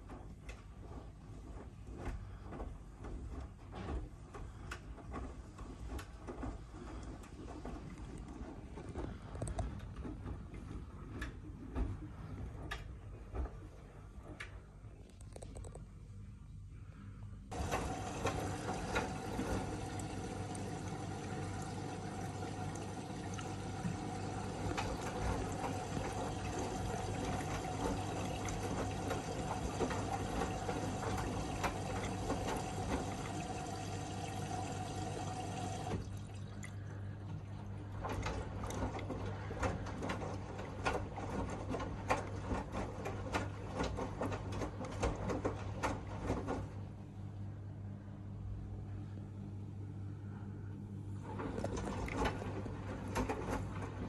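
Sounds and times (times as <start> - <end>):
water rushing into washing machine: 0.0 - 14.4, 17.5 - 47.2, 51.1 - 54.0
washing machine hum: 0.0 - 54.0.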